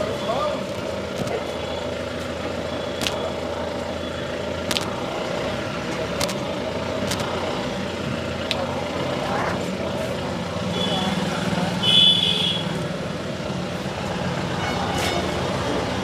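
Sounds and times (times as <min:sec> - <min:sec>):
engines and road traffic hum: 0:00.0 - 0:16.0
sharp smacks: 0:03.0 - 0:03.2, 0:04.7 - 0:05.0, 0:06.2 - 0:07.3.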